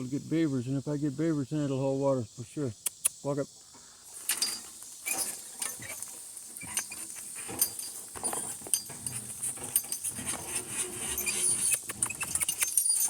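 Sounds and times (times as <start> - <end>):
high insect trill: 0.0 - 13.0
harness hardware jingling: 4.1 - 13.0.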